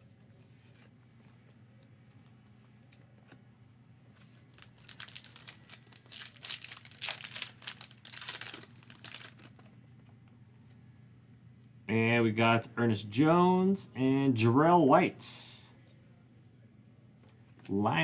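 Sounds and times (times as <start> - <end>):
foil wrapper tearing and crinkling: 4.2 - 9.7.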